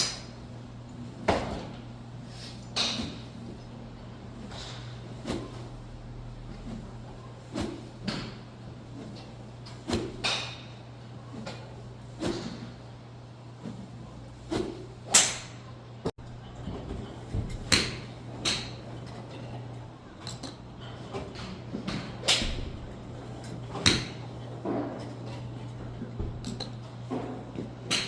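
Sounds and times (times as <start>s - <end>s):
steady low hum: 0.0s - 28.0s
golf club swishing through air: 4.5s - 5.8s, 6.6s - 8.0s, 14.4s - 15.0s.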